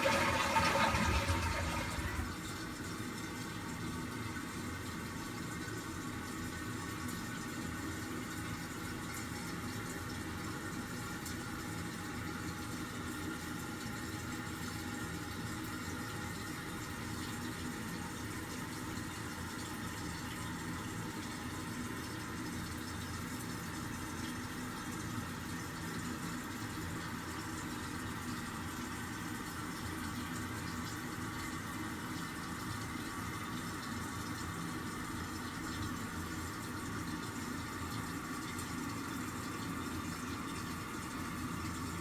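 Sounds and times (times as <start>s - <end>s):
toilet tank refilling hiss: 0.0s - 2.8s.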